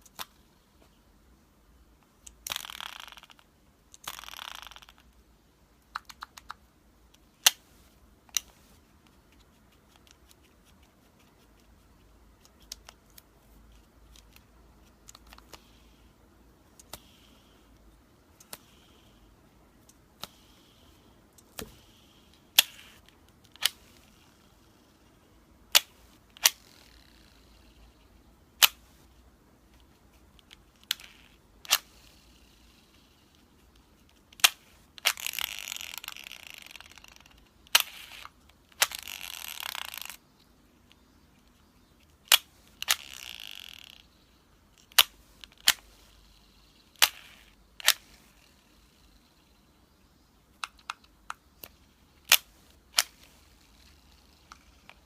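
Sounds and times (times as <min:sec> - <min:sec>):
fishing reel clicks: 0:02.5 - 0:03.4, 0:04.1 - 0:05.0, 0:35.1 - 0:38.3, 0:38.9 - 0:40.2, 0:42.8 - 0:44.0.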